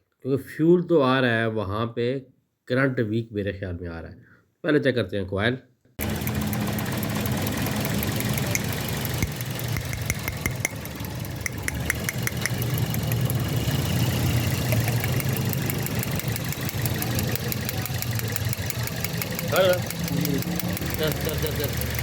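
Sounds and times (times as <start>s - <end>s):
car engine idling: 6.0s - 22.0s
sharp engine ticking: 6.0s - 22.0s.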